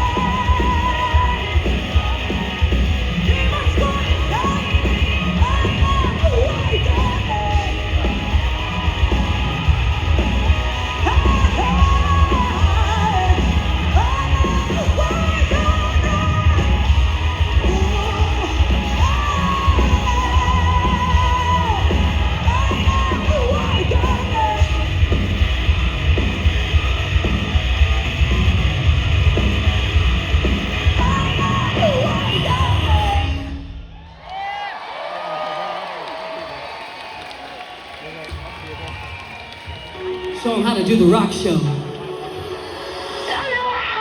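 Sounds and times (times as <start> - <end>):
live rock band playing: 0.0 - 33.6.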